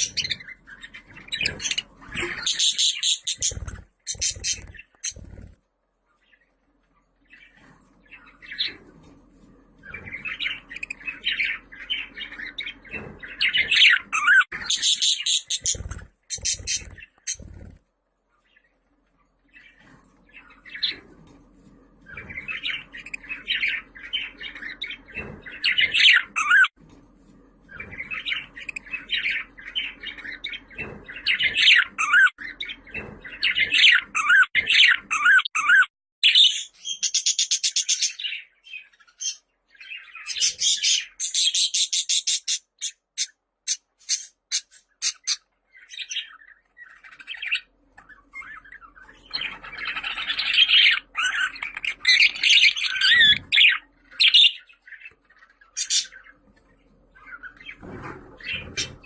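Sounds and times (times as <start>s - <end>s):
budgerigar warbling and chattering: 0.0s - 0.5s, 1.3s - 5.3s, 48.4s - 55.0s.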